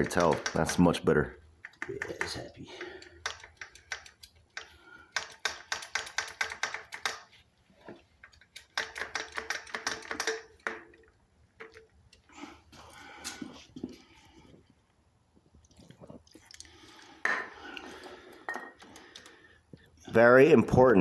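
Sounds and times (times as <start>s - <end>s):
rapid light mechanical clicking: 0.0s - 1.0s, 1.6s - 7.3s, 8.2s - 10.8s.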